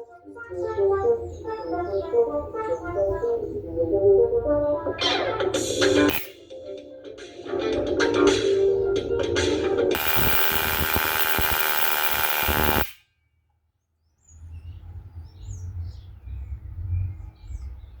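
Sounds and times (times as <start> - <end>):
birds chirping: 0.4 - 4.4
static hiss: 10.0 - 12.9.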